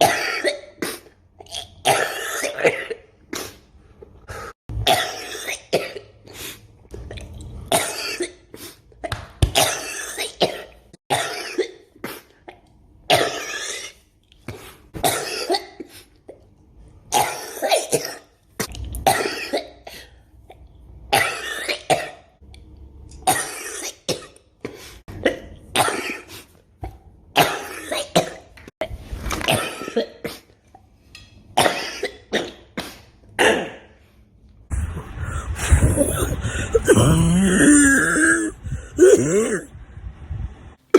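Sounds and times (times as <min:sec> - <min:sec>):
people coughing: 0:34.7 - 0:39.7.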